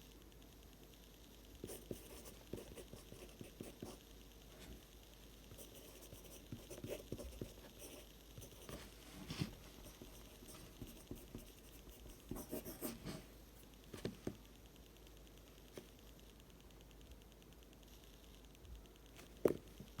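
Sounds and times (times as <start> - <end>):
pencil scratching on paper: 1.6 - 4.0, 5.6 - 8.8, 9.4 - 13.2.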